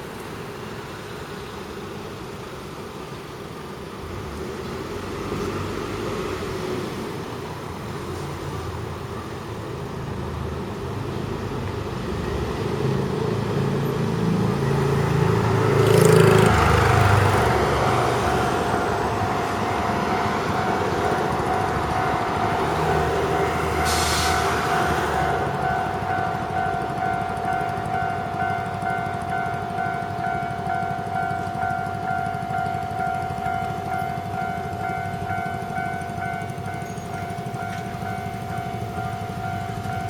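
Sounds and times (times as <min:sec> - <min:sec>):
road traffic passing: 0:00.0 - 0:40.0
railway crossing warning bell: 0:13.1 - 0:40.0
short hiss: 0:23.8 - 0:24.6.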